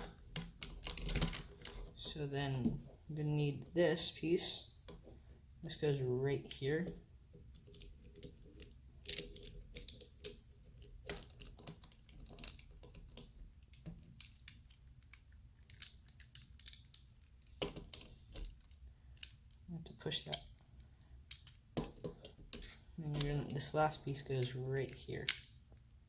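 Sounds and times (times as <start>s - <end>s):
plastic bricks clicking and rattling: 7.5s - 20.4s.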